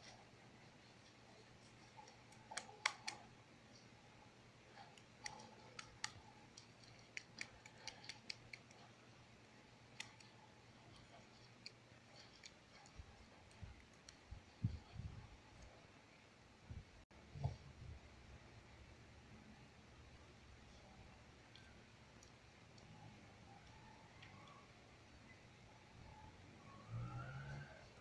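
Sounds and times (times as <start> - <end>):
faint clicks and taps: 0.0 - 4.0, 4.7 - 17.7, 20.7 - 24.7
faint low hum: 0.0 - 28.0.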